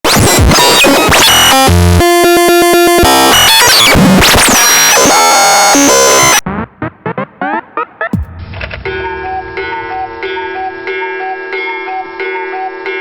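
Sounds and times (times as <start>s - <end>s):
short rising synth blips: 6.4s - 10.8s
electronic intro music: 6.4s - 11.0s.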